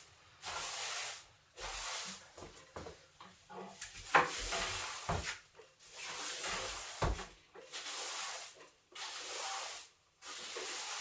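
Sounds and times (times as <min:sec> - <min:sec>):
broom sweeping floor: 0:00.0 - 0:11.0
broom knocking on floor: 0:04.0 - 0:05.4, 0:07.0 - 0:07.4.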